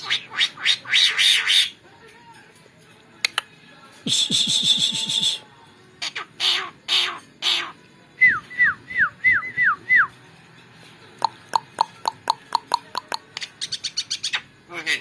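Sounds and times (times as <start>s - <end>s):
bird harsh rasps: 0.0s - 1.8s, 6.0s - 7.8s
bird sharp ticking notes: 11.2s - 14.3s.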